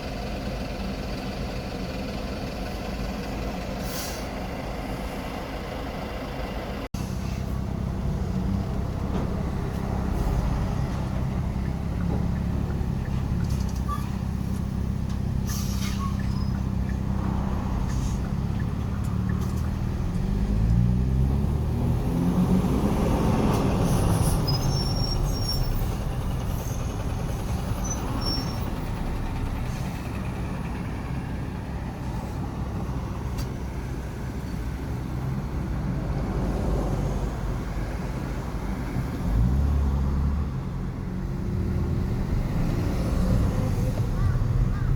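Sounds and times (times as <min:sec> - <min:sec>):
traffic rumble: 0:00.0 - 0:44.9
heavy vehicle passing: 0:17.0 - 0:44.9.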